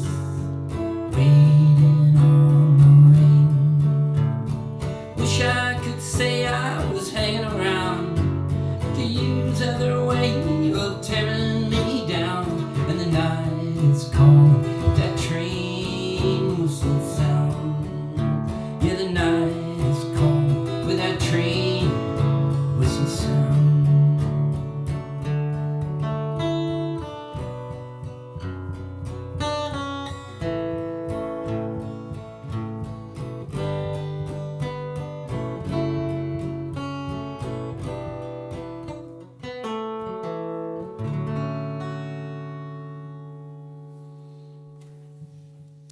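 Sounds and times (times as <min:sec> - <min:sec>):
person singing: 0:00.0 - 0:04.2, 0:05.2 - 0:24.5
acoustic guitar strumming: 0:00.0 - 0:45.9.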